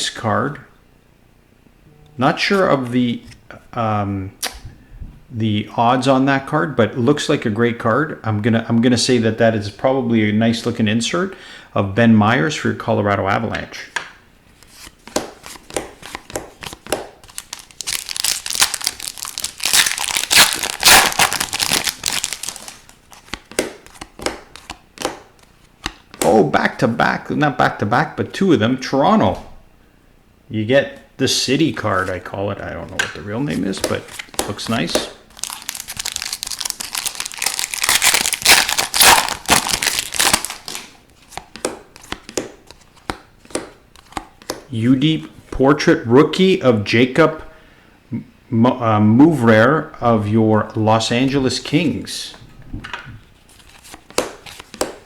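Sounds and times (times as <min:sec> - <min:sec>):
cards clicking and tapping: 0:14.7 - 0:26.4, 0:32.9 - 0:44.7, 0:53.6 - 0:55.0
foil wrapper crinkling and tearing: 0:17.2 - 0:23.5, 0:33.6 - 0:41.0.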